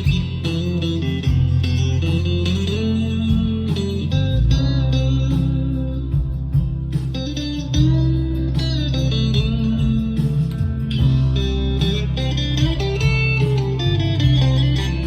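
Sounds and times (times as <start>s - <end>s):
backing track with bass notes: 0.0s - 15.0s
electric guitar bending notes: 0.0s - 15.0s.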